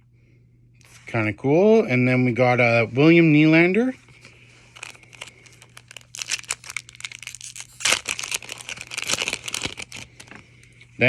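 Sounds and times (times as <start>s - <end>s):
crinkling foil wrapper: 4.2s - 10.4s.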